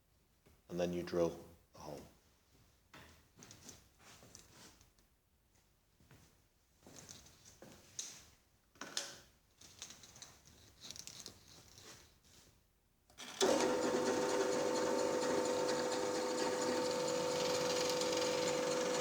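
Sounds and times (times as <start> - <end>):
drilling machine motor humming: 13.4 - 19.0.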